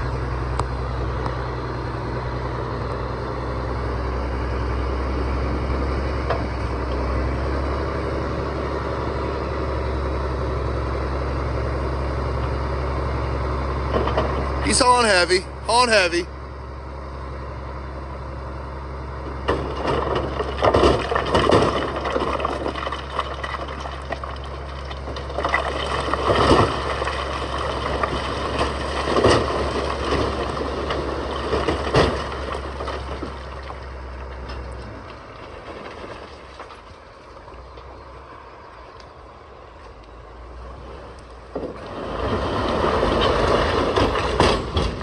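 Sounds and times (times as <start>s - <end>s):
heavy machine engine running: 0.0s - 45.0s
rock crashing and rumbling: 19.4s - 38.0s, 41.4s - 45.0s.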